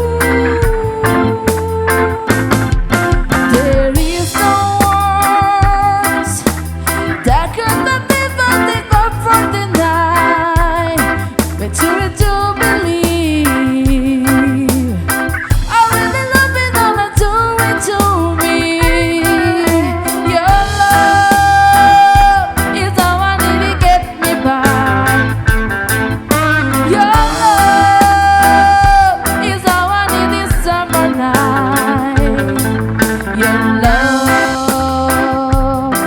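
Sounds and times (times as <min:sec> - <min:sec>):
reggae band playing: 0:00.0 - 0:36.0.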